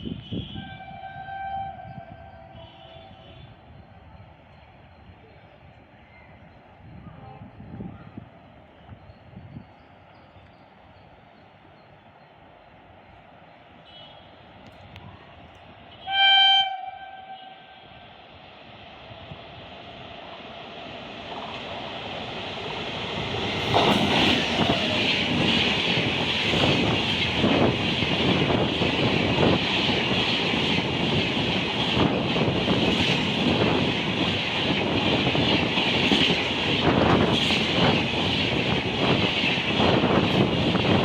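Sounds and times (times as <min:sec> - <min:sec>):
train wheels rushing on rail: 0:17.8 - 0:41.0
wheels clacking over rail joints: 0:21.3 - 0:41.0.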